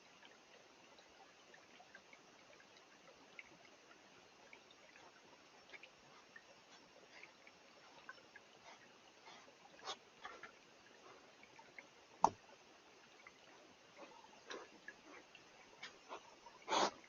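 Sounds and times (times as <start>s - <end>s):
faint scattered clicks and ticks: 0.0s - 17.0s.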